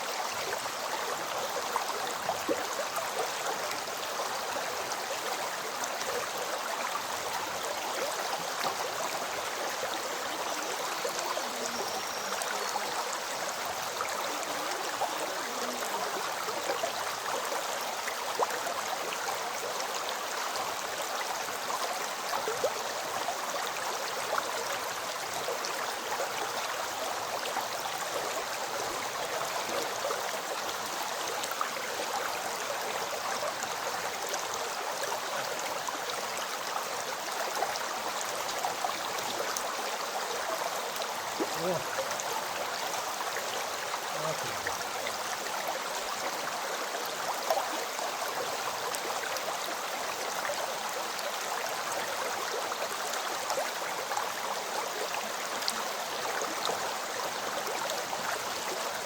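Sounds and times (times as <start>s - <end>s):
river water rushing: 0.0s - 59.0s.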